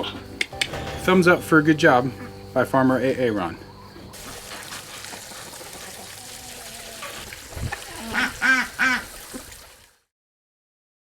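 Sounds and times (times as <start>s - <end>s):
farm animal nasal calls: 3.5s - 9.3s.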